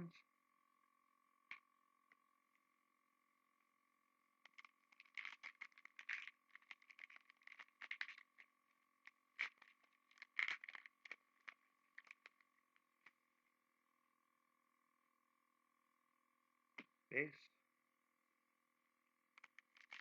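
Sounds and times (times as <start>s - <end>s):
faint steady tone: 0.0s - 20.0s
trading cards being flipped: 4.5s - 8.4s, 9.4s - 12.4s, 19.4s - 20.0s.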